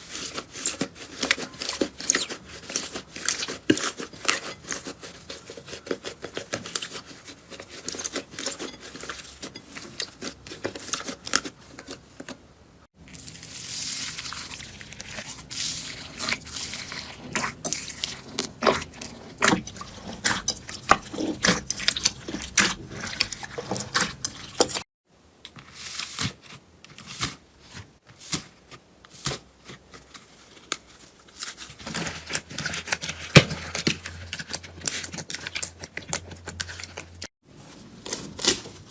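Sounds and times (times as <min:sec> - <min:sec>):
slime squishing and crackling: 0:00.0 - 0:12.0, 0:13.1 - 0:24.8, 0:30.3 - 0:37.2.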